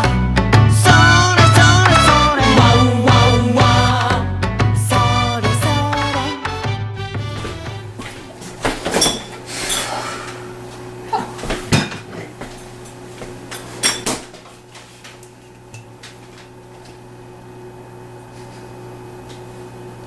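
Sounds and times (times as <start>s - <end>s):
dishes and utensils clanking: 7.9s - 10.4s, 11.1s - 12.8s, 13.5s - 14.4s.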